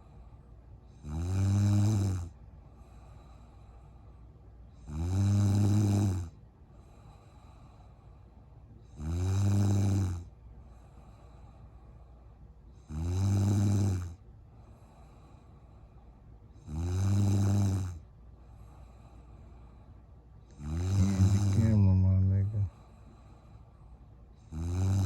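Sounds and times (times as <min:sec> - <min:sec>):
woman snoring: 0:01.0 - 0:02.3, 0:04.8 - 0:06.3, 0:09.0 - 0:10.2, 0:12.9 - 0:14.1, 0:16.6 - 0:18.0, 0:20.6 - 0:22.7, 0:24.5 - 0:25.0.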